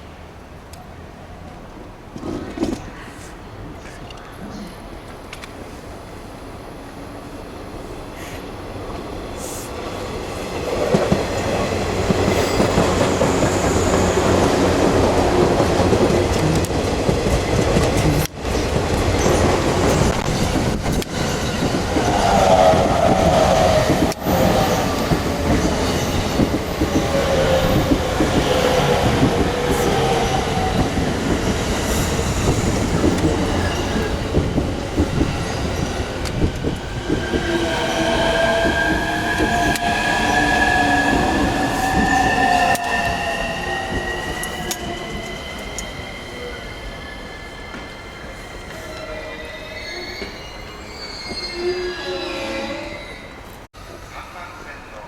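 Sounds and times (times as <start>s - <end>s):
train wheels clattering on rails: 10.1s - 46.6s
train whine falling in pitch: 37.1s - 46.6s.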